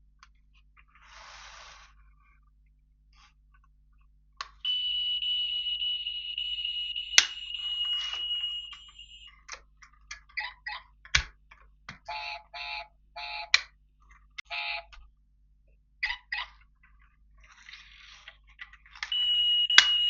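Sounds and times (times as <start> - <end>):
short pitched chirps: 4.7 - 9.3.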